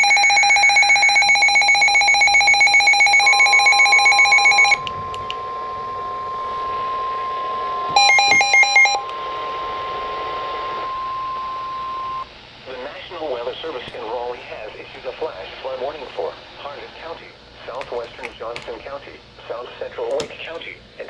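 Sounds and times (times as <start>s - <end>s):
rapidly pulsing alarm beeps: 0.0s - 10.2s, 10.8s - 12.3s
steady single-pitch warning tone: 0.0s - 12.3s.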